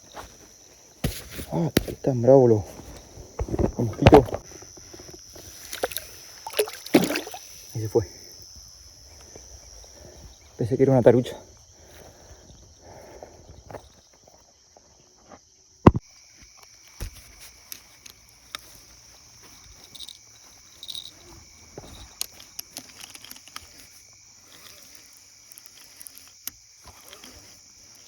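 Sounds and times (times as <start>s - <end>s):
insects chirring: 0.0s - 28.0s
small clicks and knocks: 20.8s - 27.4s.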